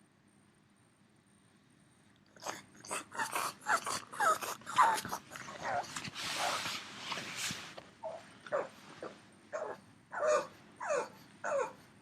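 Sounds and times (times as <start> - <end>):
dog whimpering and yipping: 2.9 - 6.7, 8.0 - 11.9.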